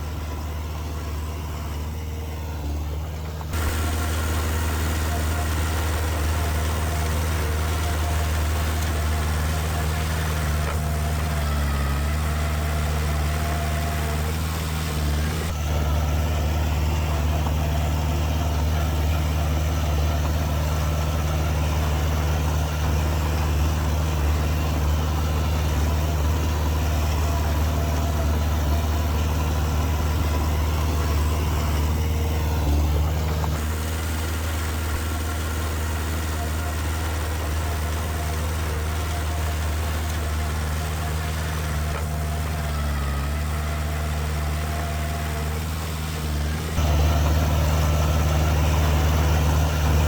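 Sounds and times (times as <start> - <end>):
diesel engine droning: 0.0 - 50.0.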